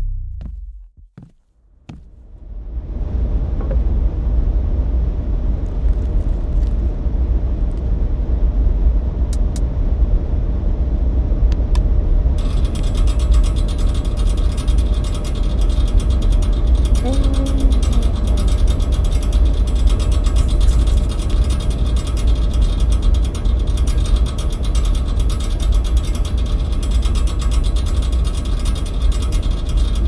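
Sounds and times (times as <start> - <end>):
low mechanical rumble: 0.0 - 30.0
fast mechanical clicking and rattling: 12.4 - 30.0.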